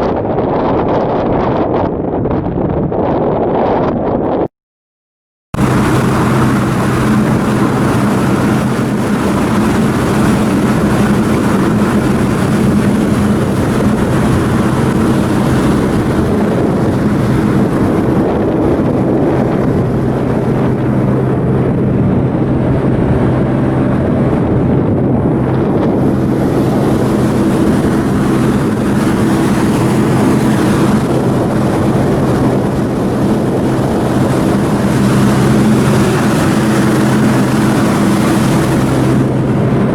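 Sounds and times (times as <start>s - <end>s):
diesel engine droning: 5.6s - 39.9s.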